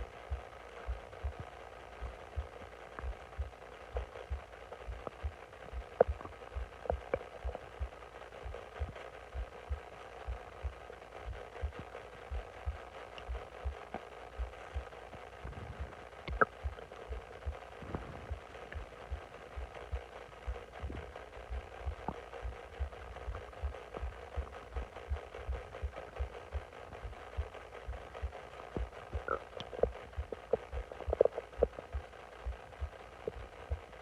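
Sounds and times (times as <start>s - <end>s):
soft low thumps: 0.0s - 34.0s
stomach gurgling with squeaky pops: 5.0s - 7.7s, 15.1s - 19.2s, 28.7s - 32.1s.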